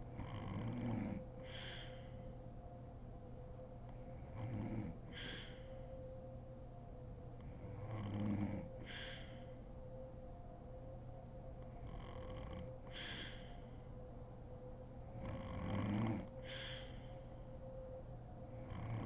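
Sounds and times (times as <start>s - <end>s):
breathy hiss: 0.0s - 2.5s, 4.8s - 6.0s, 7.7s - 9.7s, 11.8s - 14.0s, 15.2s - 17.6s
woman snoring: 7.8s - 8.7s, 15.2s - 16.3s.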